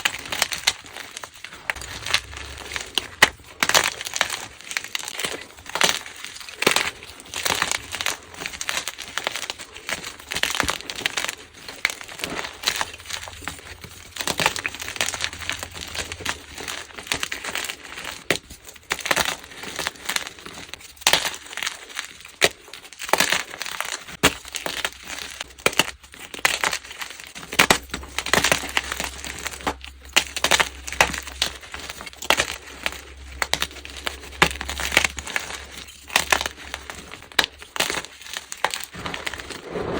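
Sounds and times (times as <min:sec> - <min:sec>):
chalk being crushed: 0:23.5 - 0:39.9.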